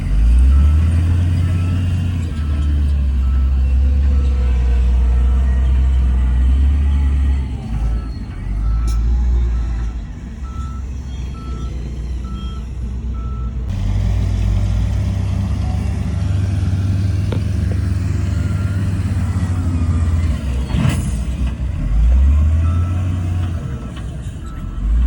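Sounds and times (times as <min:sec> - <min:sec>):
heavy diesel machinery rumbling: 0:00.0 - 0:25.0
reversing alarm beeps: 0:00.1 - 0:13.6.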